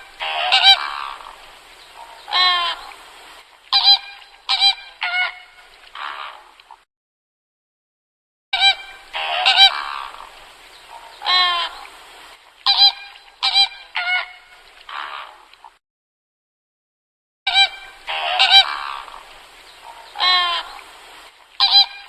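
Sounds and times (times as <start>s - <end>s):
farm birds calling: 0.0s - 3.0s, 8.6s - 11.9s, 12.6s - 15.4s, 17.5s - 21.0s, 21.6s - 22.0s.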